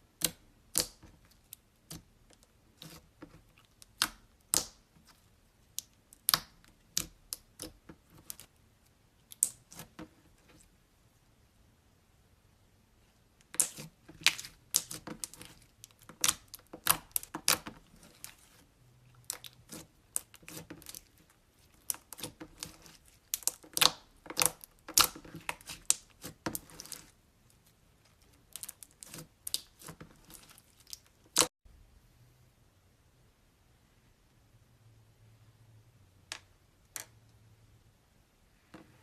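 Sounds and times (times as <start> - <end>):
slime popping and crackling: 13.5 - 18.6, 19.2 - 27.1.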